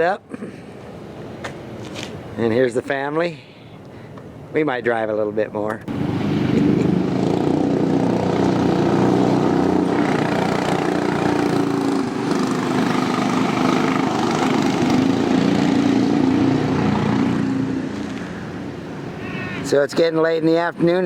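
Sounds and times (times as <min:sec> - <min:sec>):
kart engines running: 0:05.9 - 0:18.3.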